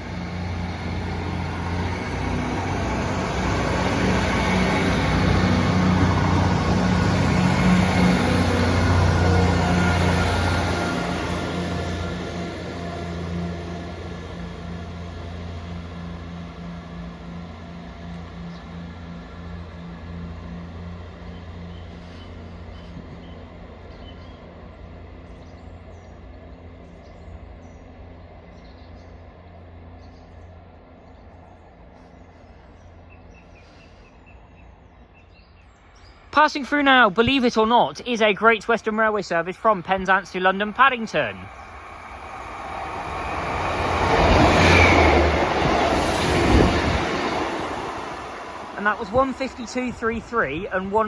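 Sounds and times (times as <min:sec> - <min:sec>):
train engine rumbling: 0:00.0 - 0:51.0
rail clack: 0:41.4 - 0:50.4.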